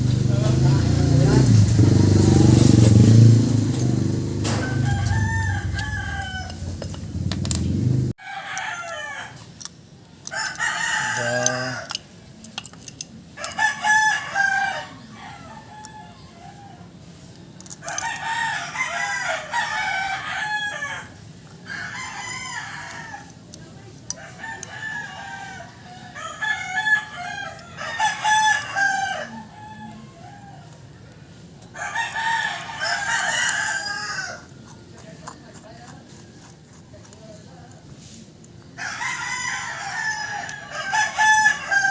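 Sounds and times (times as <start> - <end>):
loud low rumble: 0.0 - 8.2
roosters crowing: 0.1 - 7.4, 8.0 - 12.3, 12.9 - 41.9.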